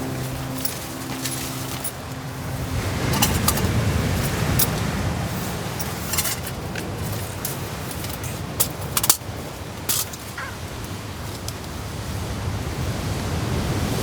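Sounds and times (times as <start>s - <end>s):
crisp clinks: 0.0s - 2.2s, 3.0s - 11.6s
background music: 0.0s - 5.3s
rustles: 0.0s - 12.2s
strong wind rumble: 0.0s - 14.0s.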